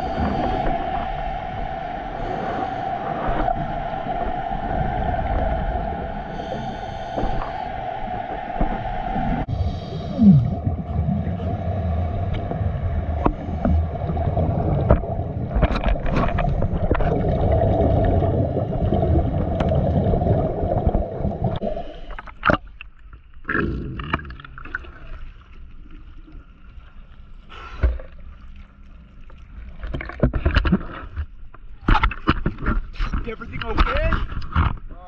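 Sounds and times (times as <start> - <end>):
motorboat engine drone underwater: 0.0 - 33.2
underwater clicks: 20.8 - 25.0.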